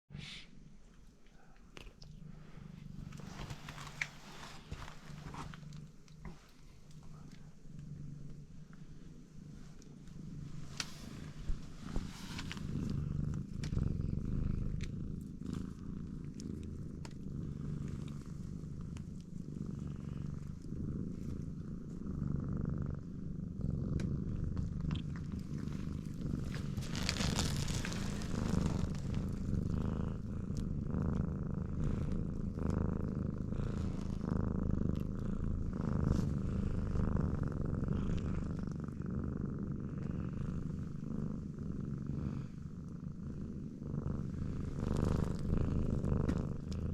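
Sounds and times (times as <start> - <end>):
cat purring: 0.1 - 46.9.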